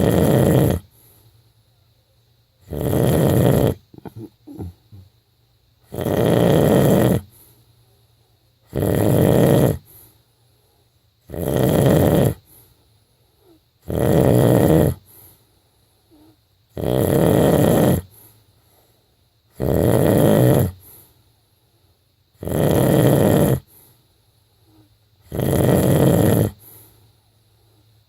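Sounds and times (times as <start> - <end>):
person snoring loudly: 0.0 - 0.9, 2.6 - 5.1, 5.9 - 7.3, 8.7 - 9.9, 11.3 - 12.4, 13.8 - 15.0, 16.8 - 18.1, 19.6 - 20.8, 22.4 - 23.7, 25.3 - 26.6
faint snuffles: 0.0 - 1.4, 2.6 - 5.2, 11.3 - 21.2, 22.4 - 27.9.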